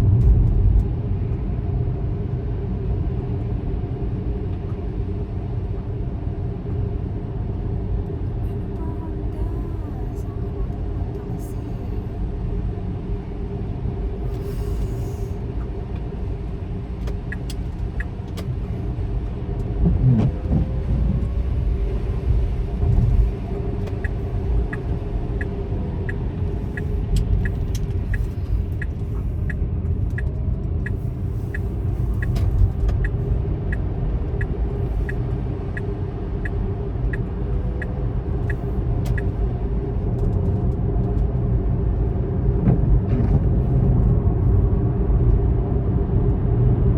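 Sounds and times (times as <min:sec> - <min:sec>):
low bumps: 0:00.0 - 0:01.1, 0:18.6 - 0:26.2
vehicle rumble from inside: 0:00.0 - 0:46.9.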